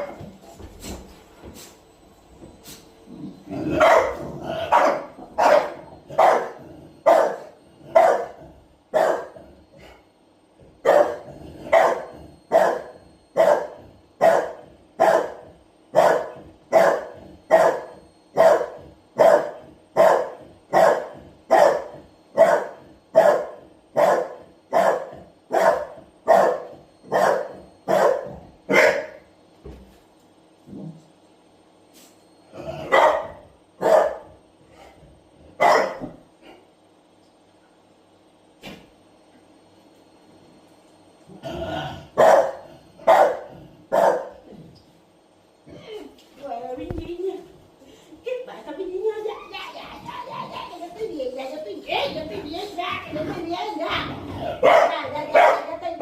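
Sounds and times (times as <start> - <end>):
dog barking: 3.8 - 9.4, 10.8 - 29.2, 32.9 - 34.3, 35.6 - 36.1, 42.2 - 44.4, 54.6 - 55.7.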